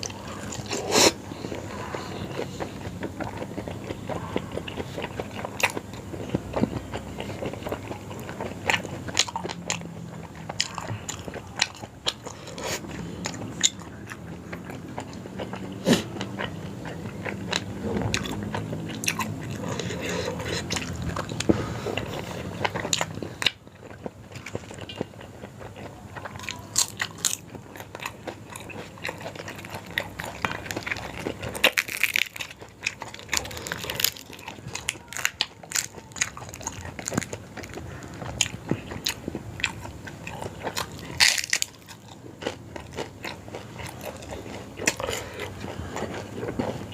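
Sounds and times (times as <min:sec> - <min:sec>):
person biting and chewing: 0:10.5 - 0:46.9.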